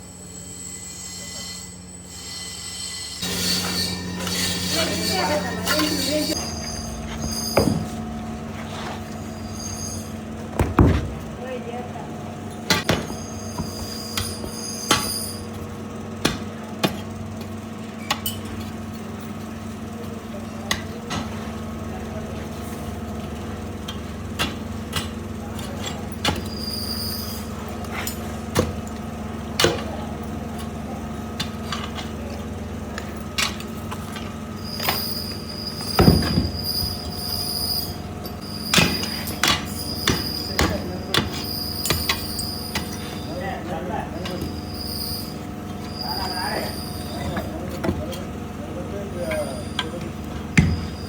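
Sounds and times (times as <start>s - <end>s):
high thin squealing tone: 0.0s - 8.0s, 8.7s - 10.2s, 12.9s - 15.5s, 34.6s - 43.5s, 44.2s - 47.6s.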